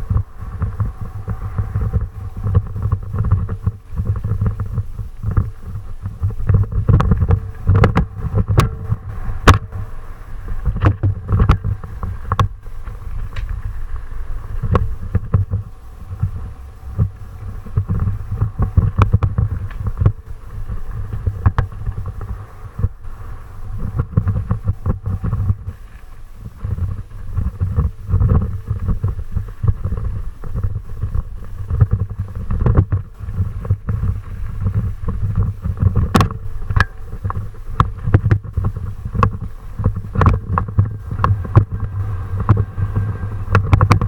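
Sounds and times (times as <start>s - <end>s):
low rumble: 0.0s - 44.0s
wind buffeting microphone: 0.0s - 44.0s.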